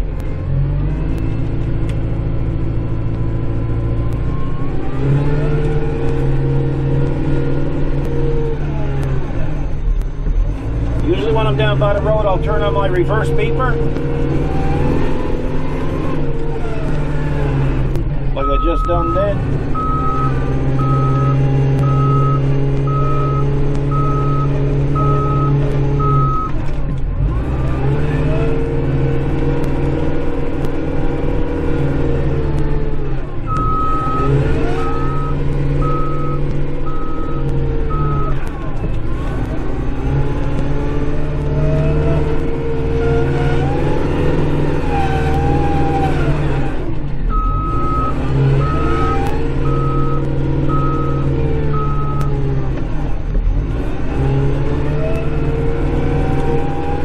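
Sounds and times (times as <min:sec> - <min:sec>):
tractor diesel engine running: 0:00.0 - 0:57.0
reverse beeper high beeps: 0:33.5 - 0:38.4.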